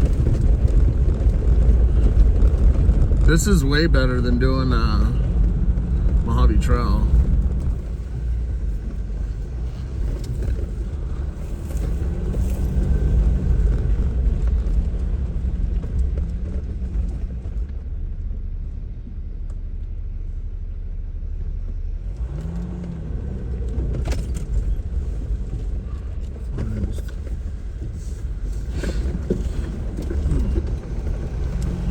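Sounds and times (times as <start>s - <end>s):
vehicle engine and tyres rumbling: 0.0s - 31.9s.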